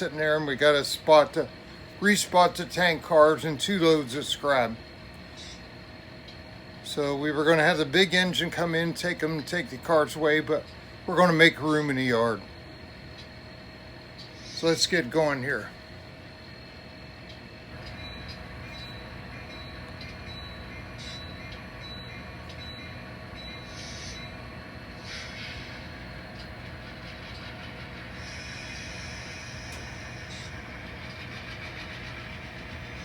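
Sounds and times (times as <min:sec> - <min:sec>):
model train hum: 0:23.4 - 0:33.0
short hisses: 0:23.7 - 0:24.2, 0:25.0 - 0:25.9, 0:28.2 - 0:30.6.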